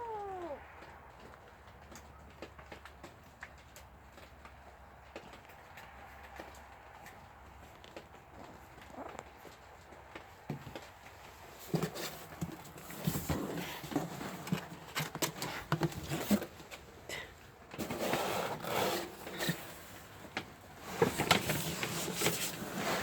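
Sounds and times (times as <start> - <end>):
cats scuffling and scraping: 0.0 - 23.0.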